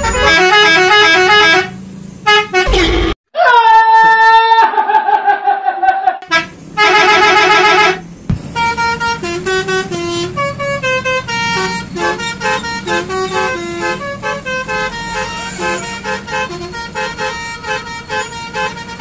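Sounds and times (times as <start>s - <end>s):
musical bus horn: 0.0s - 3.2s, 6.2s - 19.0s.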